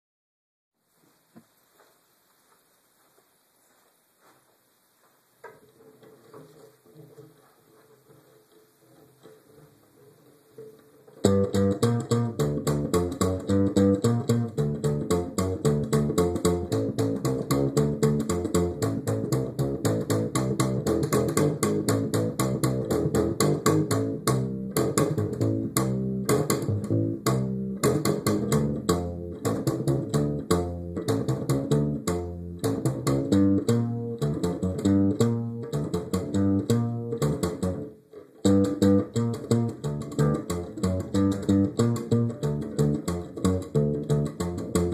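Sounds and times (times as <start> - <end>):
plucked guitar and bass music: 11.1 - 44.9.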